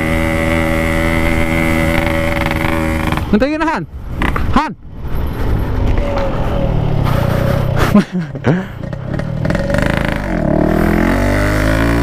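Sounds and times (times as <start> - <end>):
two-stroke motorcycle engine running: 0.0 - 3.4.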